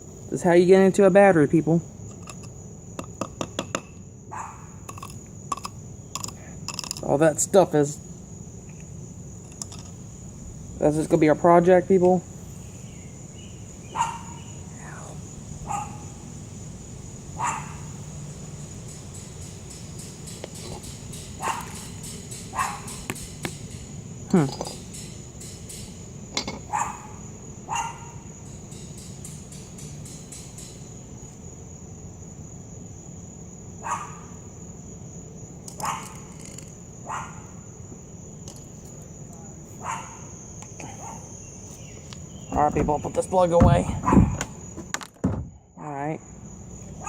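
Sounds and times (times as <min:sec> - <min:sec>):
insect chirr: 0:00.0 - 0:47.0
dog barking: 0:04.3 - 0:04.8, 0:13.9 - 0:14.5, 0:15.6 - 0:16.2, 0:17.4 - 0:18.0, 0:21.4 - 0:21.8, 0:22.6 - 0:23.0, 0:26.7 - 0:28.3, 0:33.8 - 0:34.4, 0:35.8 - 0:36.2, 0:37.0 - 0:37.5, 0:39.8 - 0:40.3, 0:41.0 - 0:41.3, 0:44.0 - 0:44.4.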